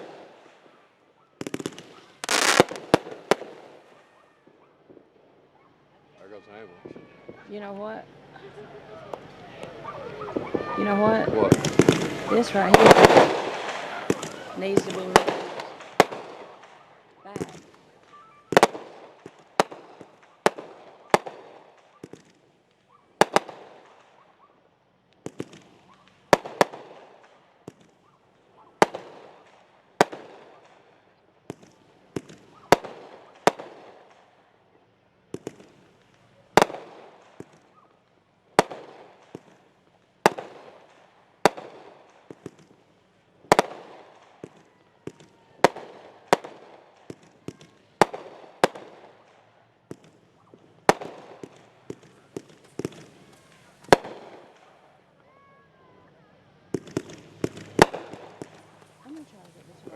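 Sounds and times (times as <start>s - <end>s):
fireworks bangs: 0.0s - 59.9s.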